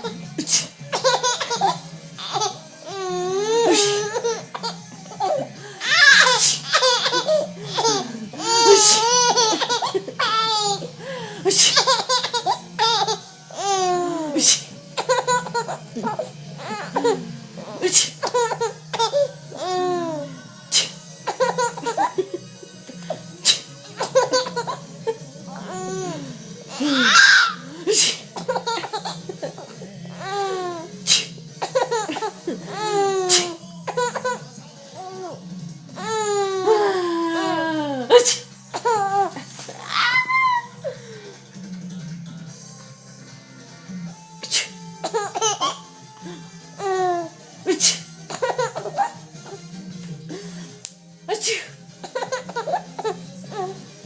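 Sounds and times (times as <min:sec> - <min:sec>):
baby girl laughing: 0:00.9 - 0:10.9, 0:11.5 - 0:14.4, 0:15.0 - 0:20.3, 0:21.2 - 0:22.4, 0:23.8 - 0:30.9, 0:31.6 - 0:34.4, 0:36.0 - 0:40.8, 0:45.0 - 0:45.8, 0:48.3 - 0:49.6, 0:52.0 - 0:53.8
short sharp sneezes: 0:27.9 - 0:28.3.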